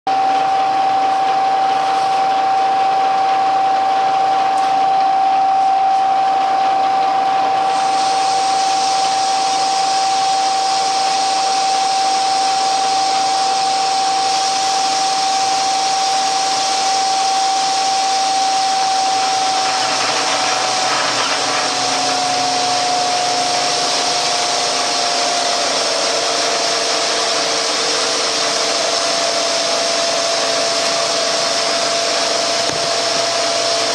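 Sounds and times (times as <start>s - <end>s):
milling machine whine: 0.1s - 33.9s
milling hiss: 7.6s - 25.2s.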